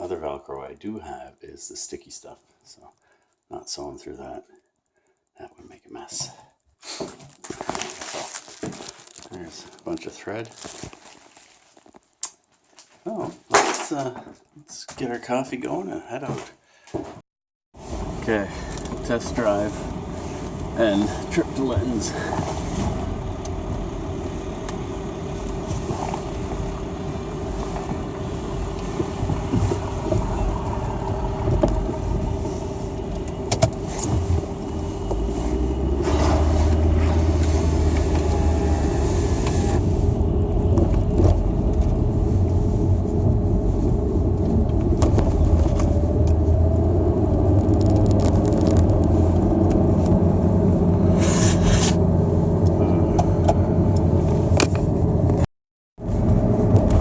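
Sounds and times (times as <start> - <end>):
car engine and road rumble: 17.8 - 57.0.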